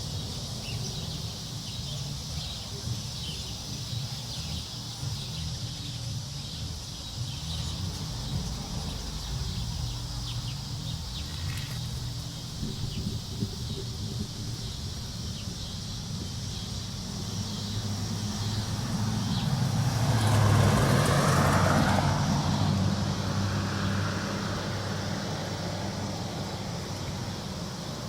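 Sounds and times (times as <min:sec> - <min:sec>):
high hiss: 0:00.0 - 0:28.0
vehicle passing by: 0:05.0 - 0:14.3, 0:16.2 - 0:28.0.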